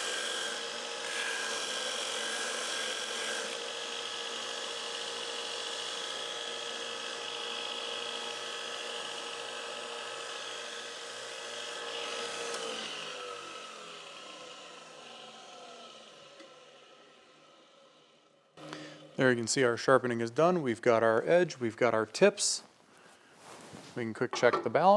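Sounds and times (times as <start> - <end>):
electric blade grinder running: 0.0 - 19.2
motor spinning down: 12.5 - 19.2.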